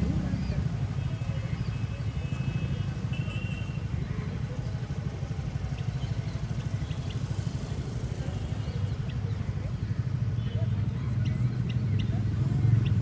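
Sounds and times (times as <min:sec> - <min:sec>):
motorbike engine running: 0:00.0 - 0:01.6.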